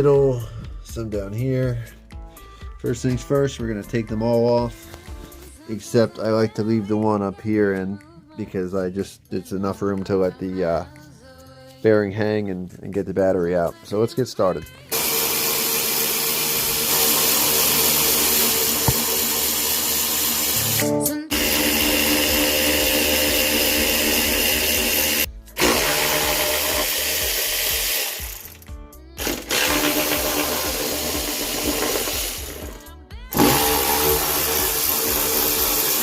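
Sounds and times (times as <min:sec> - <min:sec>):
power driver whining: 0:14.9 - 0:36.0.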